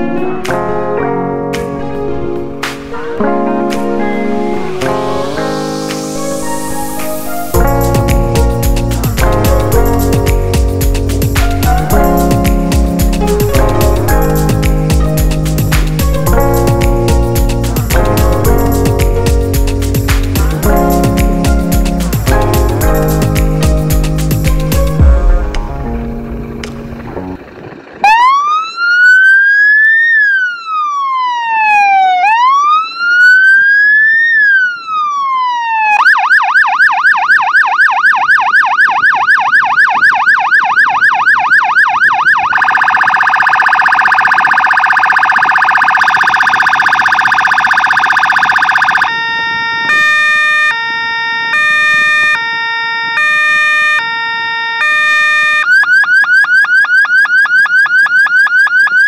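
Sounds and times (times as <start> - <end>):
fire engine electronic siren: 26.9 - 59.0.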